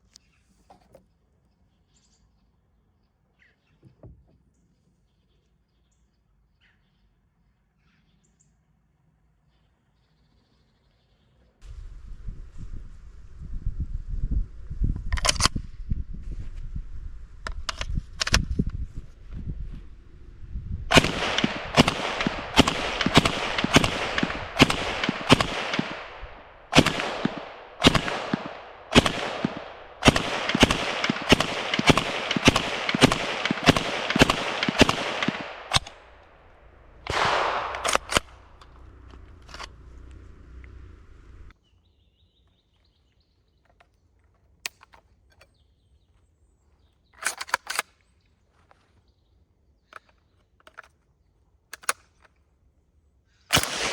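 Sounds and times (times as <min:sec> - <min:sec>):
gunshots echoing: 0:20.9 - 0:39.7, 0:53.5 - 0:53.9.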